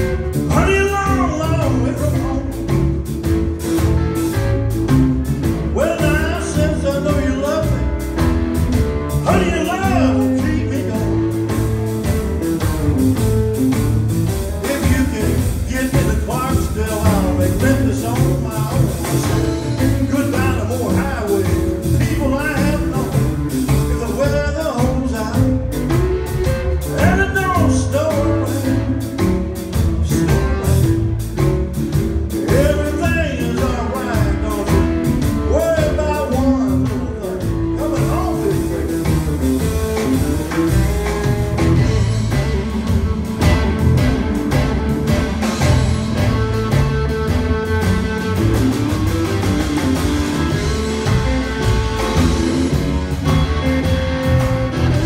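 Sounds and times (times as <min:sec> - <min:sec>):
blues band playing: 0:00.0 - 0:55.0
person singing: 0:00.5 - 0:02.9, 0:05.7 - 0:08.0, 0:09.2 - 0:11.6, 0:14.6 - 0:25.6, 0:26.4 - 0:30.9, 0:32.3 - 0:40.7.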